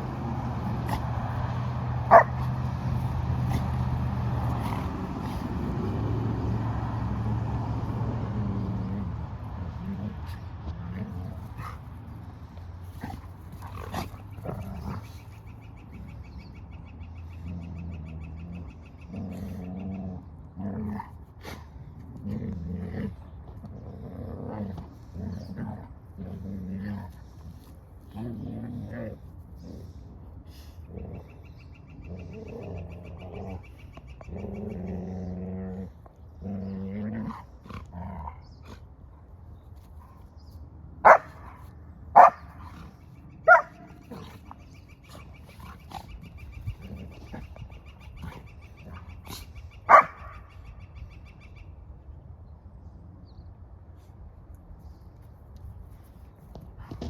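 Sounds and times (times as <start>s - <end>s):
dog barking sharply: 2.1s - 2.4s, 49.9s - 50.3s
dog growling: 2.1s - 6.0s.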